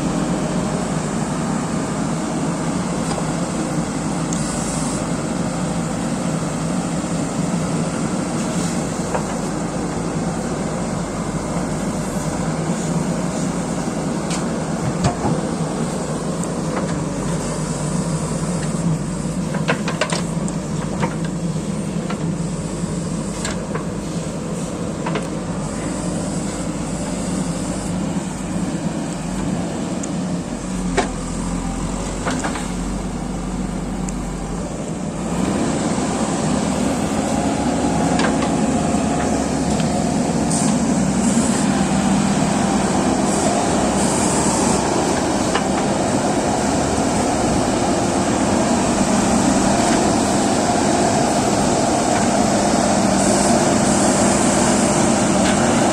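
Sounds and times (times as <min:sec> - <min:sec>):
excavator diesel engine running: 0:00.0 - 0:55.9.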